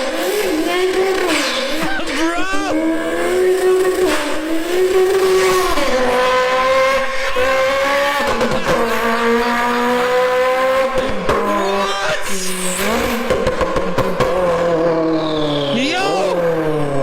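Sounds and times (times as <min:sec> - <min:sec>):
car engine revving high: 0:00.0 - 0:17.0.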